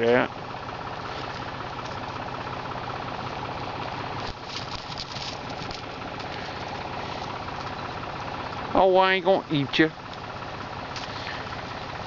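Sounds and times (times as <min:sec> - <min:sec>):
engine idling: 0:00.0 - 0:12.0
crackling: 0:03.8 - 0:08.6.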